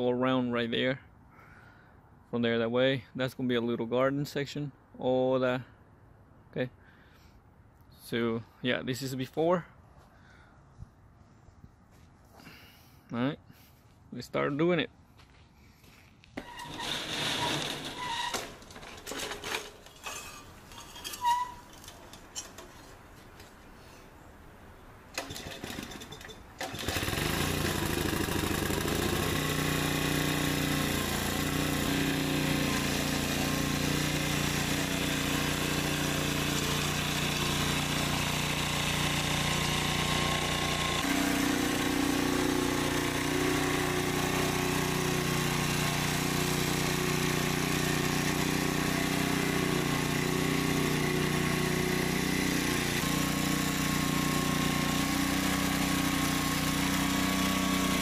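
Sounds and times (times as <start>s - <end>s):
rototiller engine running: 16.4s - 20.1s, 25.1s - 58.0s.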